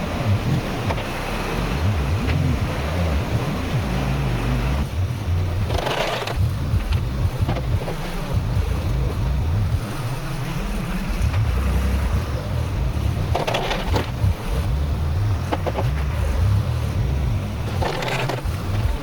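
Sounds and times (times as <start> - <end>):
tractor engine running: 0.0 - 19.0
wind buffeting microphone: 0.0 - 19.0.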